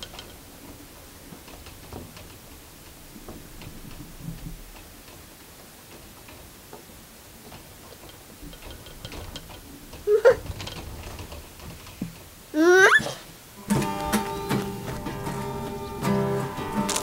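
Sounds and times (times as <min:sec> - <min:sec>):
child squealing: 0:12.6 - 0:13.2.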